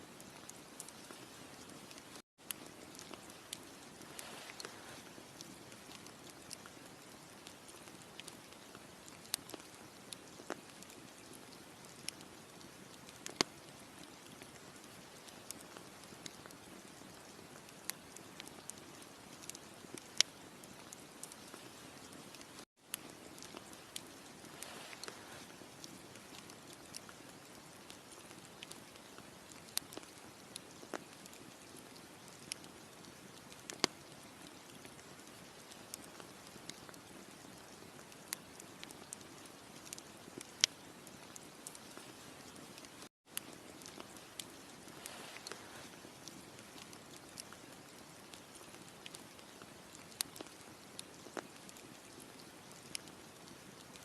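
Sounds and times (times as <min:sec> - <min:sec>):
fire hissing softly: 0:00.0 - 0:54.0
campfire crackling and popping: 0:00.1 - 0:54.0.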